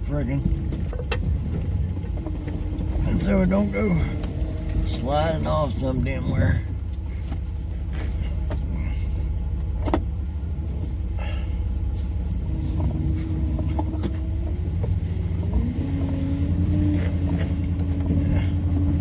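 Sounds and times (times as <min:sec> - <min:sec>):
car engine and road rumble: 0:00.0 - 0:19.0.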